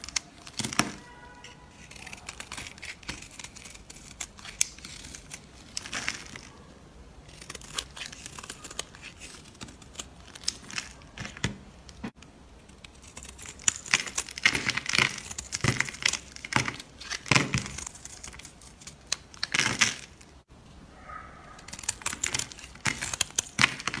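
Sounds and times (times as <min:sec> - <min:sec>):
slime crackling and popping: 0:00.0 - 0:06.6, 0:07.2 - 0:11.4, 0:12.6 - 0:20.4, 0:21.6 - 0:24.0.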